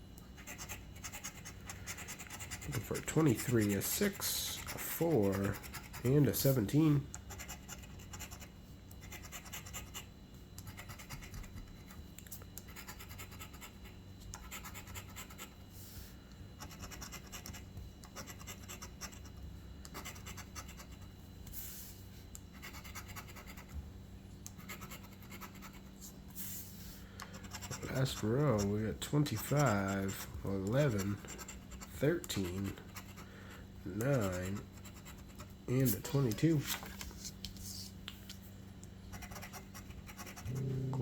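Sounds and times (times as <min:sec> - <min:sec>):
coin scratching lottery ticket: 0:00.4 - 0:11.9, 0:12.7 - 0:15.6, 0:16.6 - 0:19.3, 0:27.4 - 0:33.2, 0:33.9 - 0:36.6, 0:39.1 - 0:40.7.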